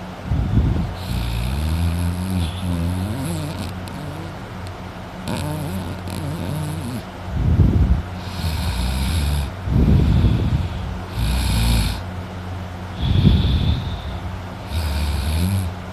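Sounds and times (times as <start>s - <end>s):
man snoring loudly: 1.0s - 4.5s, 5.2s - 7.1s, 8.2s - 12.1s, 13.0s - 15.8s.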